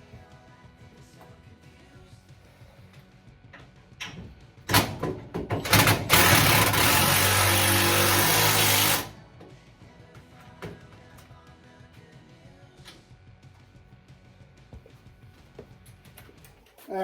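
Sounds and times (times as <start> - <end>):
power wrench running: 4.7 - 9.2.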